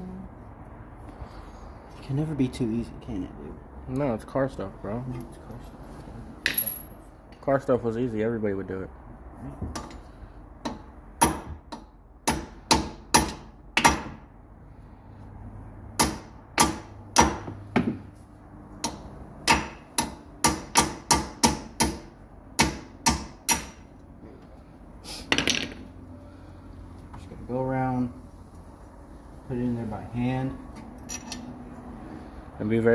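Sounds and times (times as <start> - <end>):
hammer striking steel stud: 10.6 - 14.2, 16.0 - 18.0, 18.8 - 23.8.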